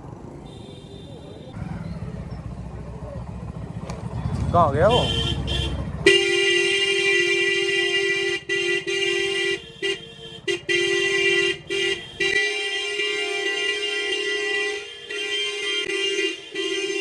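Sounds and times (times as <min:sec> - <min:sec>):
low engine rumble: 0:00.0 - 0:12.3
motorcycle horn blasts: 0:00.4 - 0:01.6, 0:03.5 - 0:17.0.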